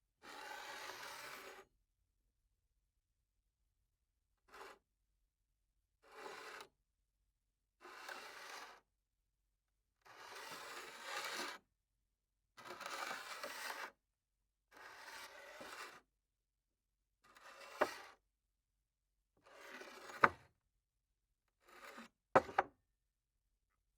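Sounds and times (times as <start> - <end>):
cup scraping across a table: 21.8 - 22.7
cup knocking: 22.4 - 22.7.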